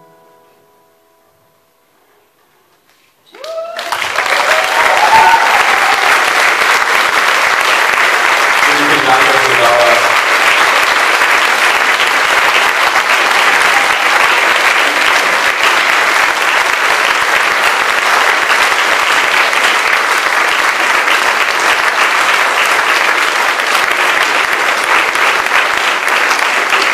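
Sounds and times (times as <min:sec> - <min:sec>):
audience applauding: 0:03.3 - 0:26.9.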